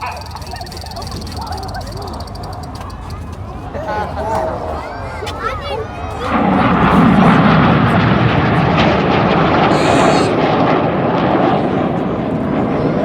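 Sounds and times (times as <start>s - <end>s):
jets flying by: 0.0s - 13.0s.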